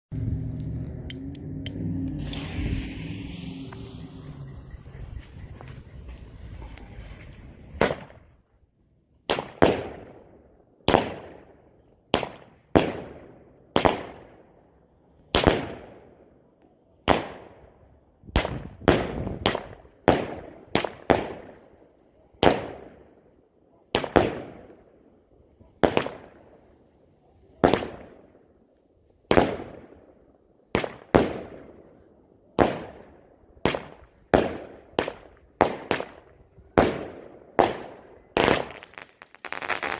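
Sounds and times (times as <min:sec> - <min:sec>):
firework shots: 0:00.2 - 0:08.4, 0:09.2 - 0:14.3, 0:15.3 - 0:16.1, 0:17.0 - 0:17.7, 0:18.3 - 0:21.7, 0:22.4 - 0:23.1, 0:23.9 - 0:24.9, 0:25.6 - 0:26.7, 0:27.5 - 0:28.3, 0:29.3 - 0:30.1, 0:30.7 - 0:39.9.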